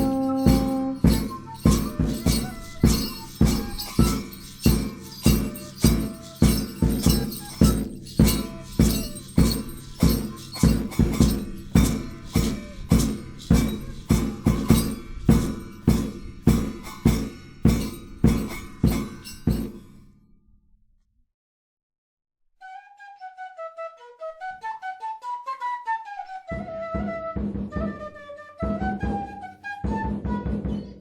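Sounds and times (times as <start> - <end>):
folk music with percussion: 0.0 - 20.1, 26.5 - 31.0.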